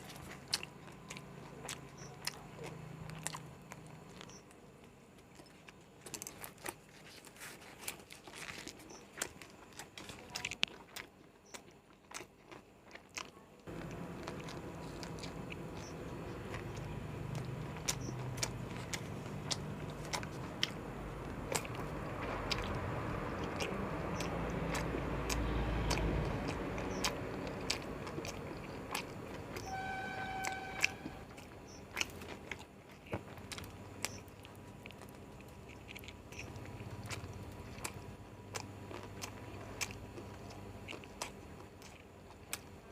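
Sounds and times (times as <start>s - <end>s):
person chewing food: 0.0s - 42.9s
background rumble: 13.7s - 41.6s
mouth clicks: 13.8s - 20.8s, 21.5s - 32.2s.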